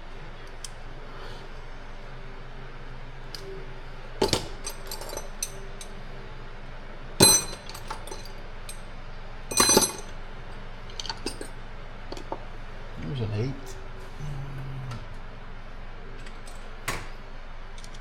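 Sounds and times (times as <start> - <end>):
metal tools clinking in toolbox: 4.2 - 5.6, 7.2 - 8.4, 9.5 - 10.1, 11.0 - 11.5
ringing metal clanks: 7.2 - 8.3, 9.5 - 10.1.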